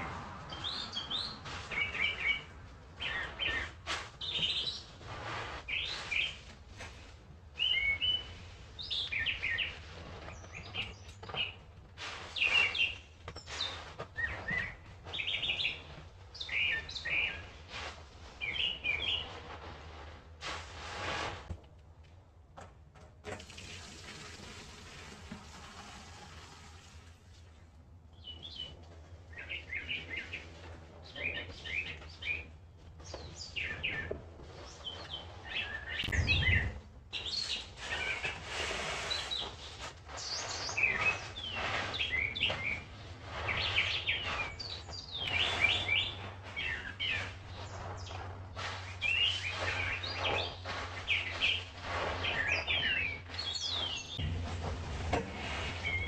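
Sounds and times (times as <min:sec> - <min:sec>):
birds chirping and calling: 0:33.0 - 0:38.4, 0:40.2 - 0:48.2, 0:49.0 - 0:54.2.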